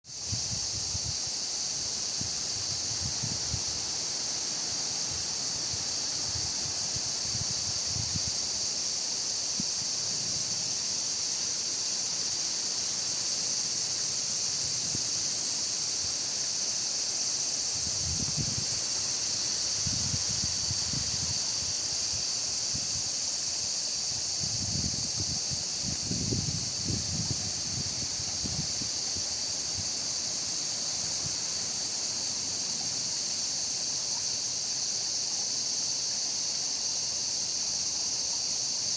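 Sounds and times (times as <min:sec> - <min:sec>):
cicadas shrilling: 0:00.0 - 0:38.9
wind buffeting microphone: 0:02.2 - 0:03.8, 0:06.2 - 0:08.4, 0:17.8 - 0:23.2, 0:24.2 - 0:29.9.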